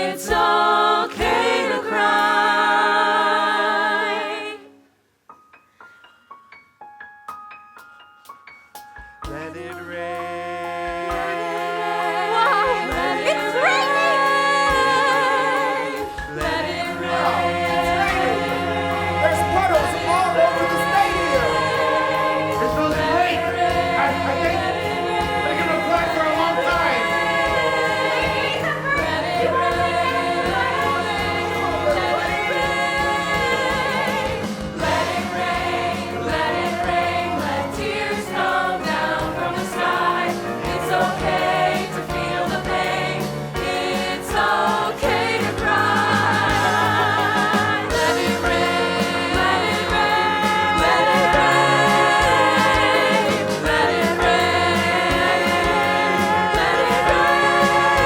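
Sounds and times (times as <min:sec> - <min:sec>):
voices singing together: 0:00.0 - 0:04.8, 0:09.3 - 0:58.0
instrumental music with steady beat: 0:10.8 - 0:58.0.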